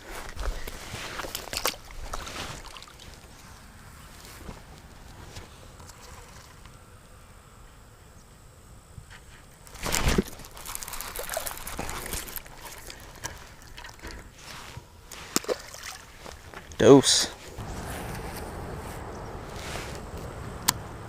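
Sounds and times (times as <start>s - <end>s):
splashing and rustling: 0.0s - 5.4s, 9.6s - 20.4s.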